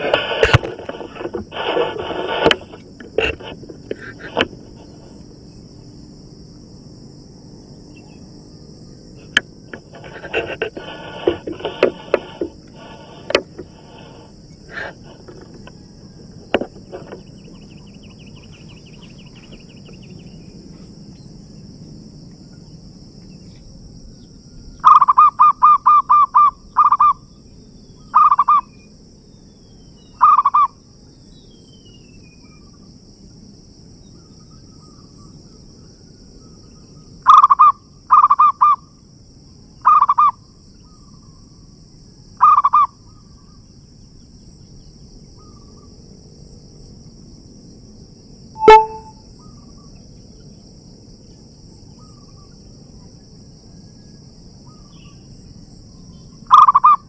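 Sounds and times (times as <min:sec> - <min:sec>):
dove cooing: 0:10.0 - 0:19.9, 0:56.5 - 0:57.0
high-pitched drone: 0:48.6 - 0:49.2.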